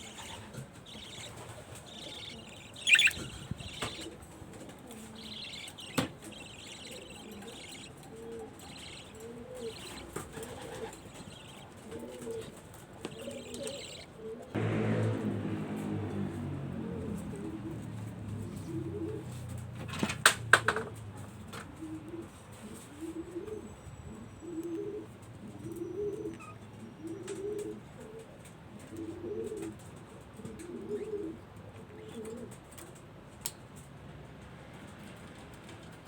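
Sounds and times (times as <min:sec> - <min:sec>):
pigeons cooing: 0:00.0 - 0:14.6, 0:16.9 - 0:19.5, 0:24.4 - 0:28.3, 0:28.9 - 0:29.8.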